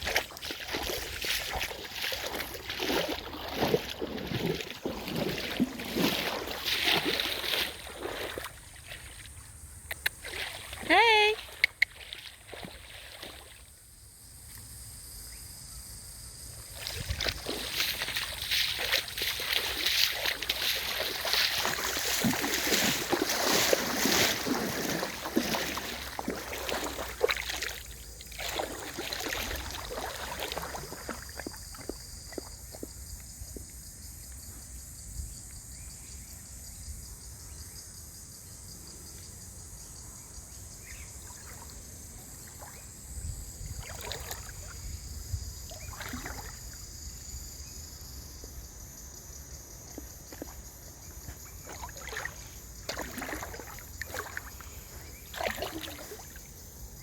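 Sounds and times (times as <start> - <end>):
wash of moving water: 0.0 - 13.7, 16.6 - 32.9, 40.9 - 43.0, 43.6 - 47.3, 49.8 - 57.0
water splashing in a creek: 0.0 - 14.6, 16.4 - 34.8, 40.6 - 57.0.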